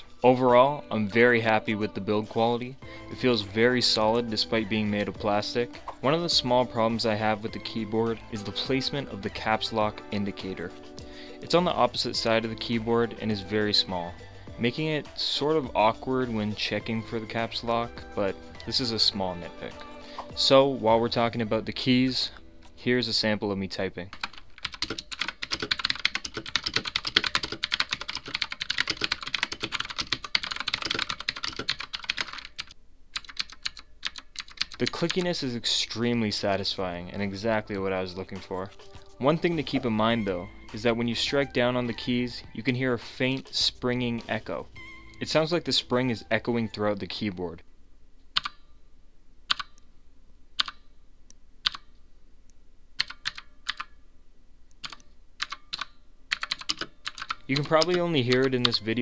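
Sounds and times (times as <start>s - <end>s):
fast typing on clicky keyboard: 24.1s - 35.4s, 48.4s - 48.6s, 49.5s - 49.8s, 50.6s - 50.8s, 51.7s - 51.9s, 53.0s - 53.9s, 54.8s - 58.9s
clicky keyboard keystrokes: 48.4s - 48.6s, 49.5s - 49.8s, 51.7s - 51.9s, 53.0s - 53.9s, 54.8s - 58.8s.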